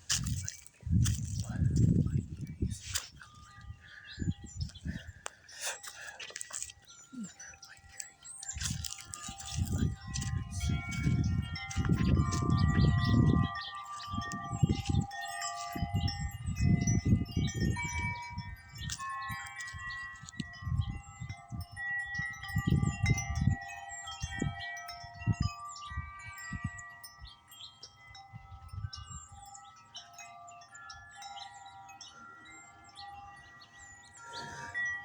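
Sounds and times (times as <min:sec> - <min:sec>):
wind rumbling on microphone: 0:00.0 - 0:05.3, 0:06.0 - 0:29.6
metal wind chimes ringing: 0:00.0 - 0:35.0.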